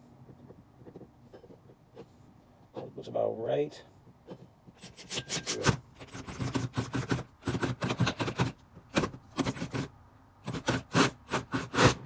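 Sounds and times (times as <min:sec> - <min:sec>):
scraping and rubbing by hand: 0:04.3 - 0:09.9.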